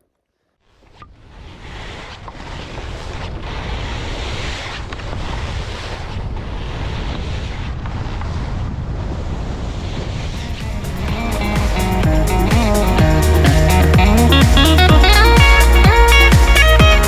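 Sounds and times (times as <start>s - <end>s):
wind buffeting microphone: 2.5s - 16.0s.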